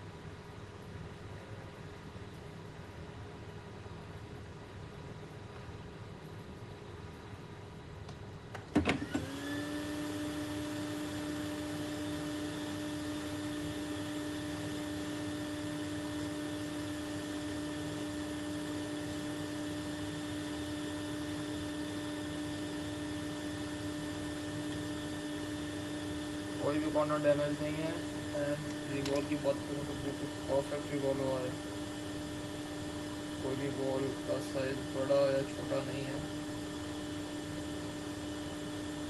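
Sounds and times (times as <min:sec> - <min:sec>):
electric blower motor humming: 0:08.6 - 0:39.0.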